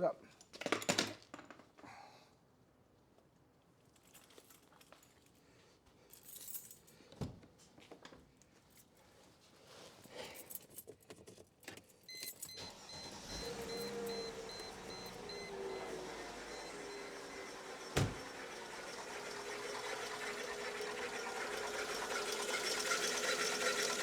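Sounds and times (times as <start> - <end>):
car warning chime beeping: 12.1 - 18.9
car keys jangling: 12.2 - 14.4.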